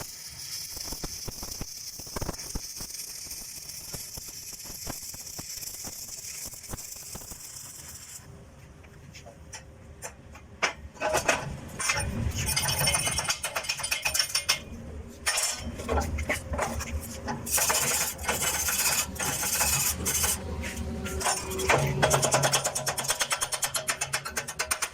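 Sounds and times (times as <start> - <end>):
welding arc crackling hiss: 0.0 - 8.4.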